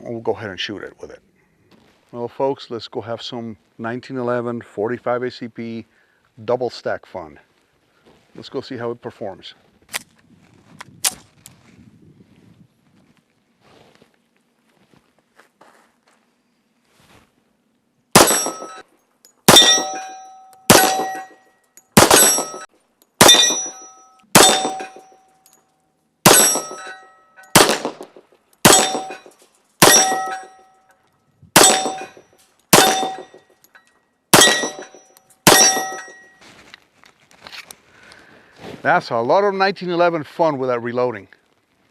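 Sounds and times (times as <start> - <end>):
pistol shots: 18.2 - 18.8, 19.5 - 20.0, 20.7 - 21.4, 22.0 - 25.1, 26.2 - 26.9, 27.5 - 30.6, 31.6 - 33.4, 34.3 - 36.2
metallic ring: 18.2 - 27.6, 28.7 - 36.5.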